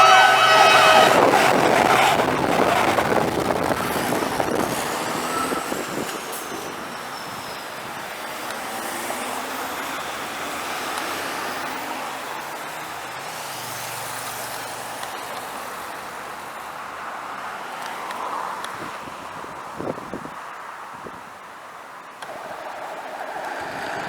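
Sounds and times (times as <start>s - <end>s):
heavy vehicle driving by: 0.0s - 14.9s, 22.3s - 24.0s.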